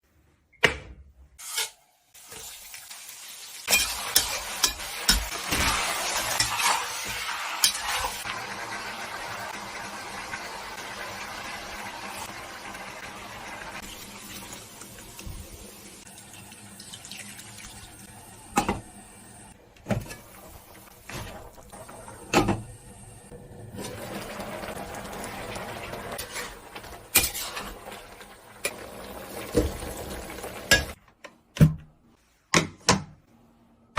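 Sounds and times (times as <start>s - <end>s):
water running into a sink: 7.9s - 18.8s, 27.5s - 31.0s.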